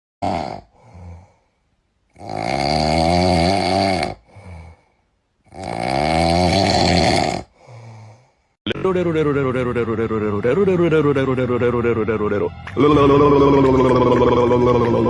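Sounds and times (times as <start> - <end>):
dog snoring loudly: 2.1 - 4.2, 5.5 - 7.6
soft breaths: 7.5 - 8.6.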